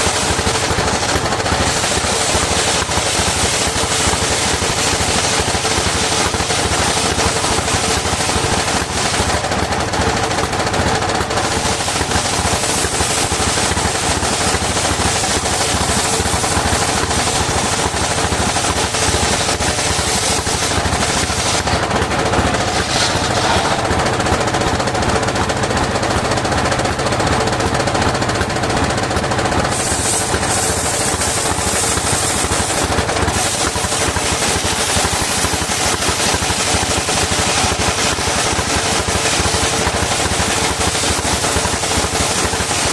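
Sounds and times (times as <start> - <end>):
engine chugging: 0.0 - 42.9.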